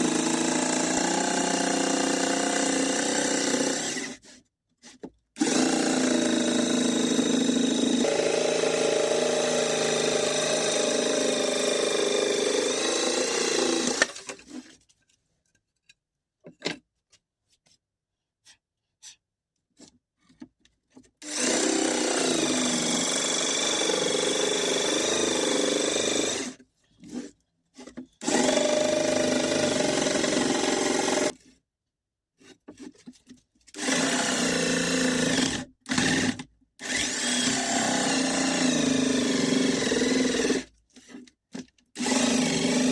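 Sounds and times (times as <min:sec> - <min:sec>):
small electric motor whining: 0:36.8 - 0:40.6.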